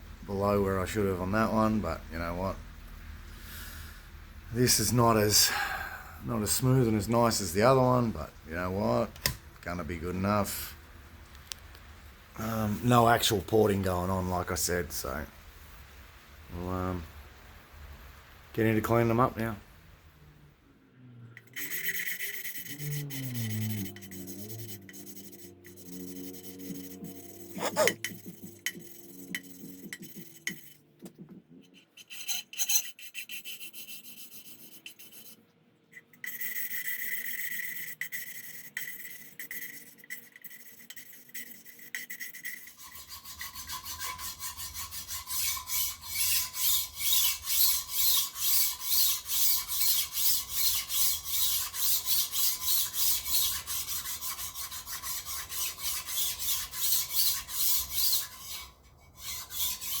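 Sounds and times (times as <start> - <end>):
hand file rasping on metal: 21.4 - 30.9, 31.6 - 35.4, 37.4 - 60.0.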